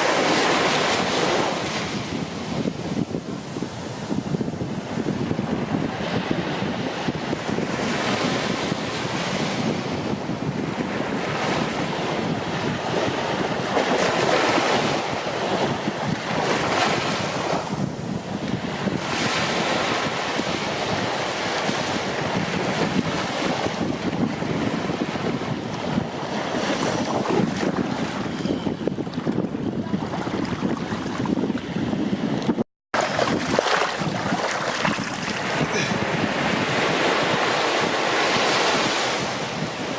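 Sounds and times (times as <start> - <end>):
ocean waves breaking: 0.0 - 32.4, 33.0 - 39.9
wind buffeting microphone: 0.0 - 39.9.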